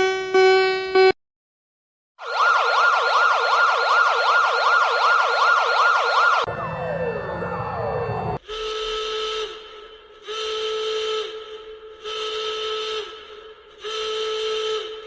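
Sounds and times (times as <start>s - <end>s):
warning siren winding down: 2.2s - 9.9s
horn-like alarm blasts: 2.2s - 15.0s.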